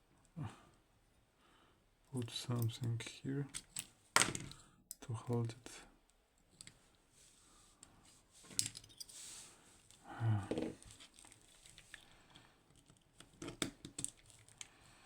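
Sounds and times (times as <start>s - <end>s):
metal tools clicking and scraping: 8.5s - 9.2s
low vocal grunt: 10.1s - 10.8s.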